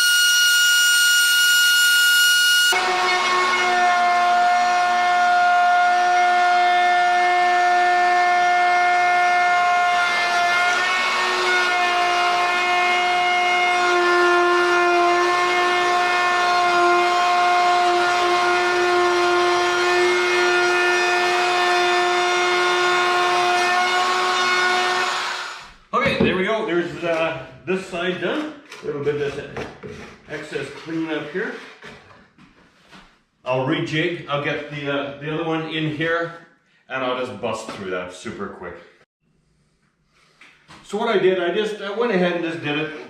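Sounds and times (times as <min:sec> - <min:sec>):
power tool cutting wood: 0:00.0 - 0:25.9.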